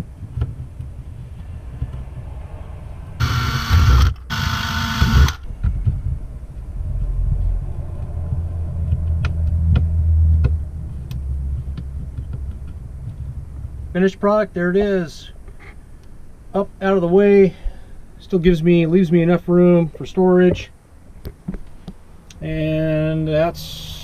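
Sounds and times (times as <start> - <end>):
sharp clicks and knocks: 0.0 - 2.3, 3.2 - 6.3, 8.0 - 13.4
low rumble: 0.0 - 14.1
rotary tool running: 3.2 - 5.4.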